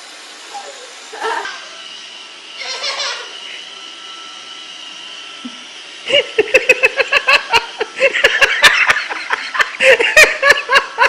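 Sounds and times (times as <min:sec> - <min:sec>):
robot vacuum cleaner whirring: 0:00.0 - 0:11.0
small child giggling: 0:00.6 - 0:01.8, 0:02.6 - 0:03.5, 0:06.1 - 0:11.0.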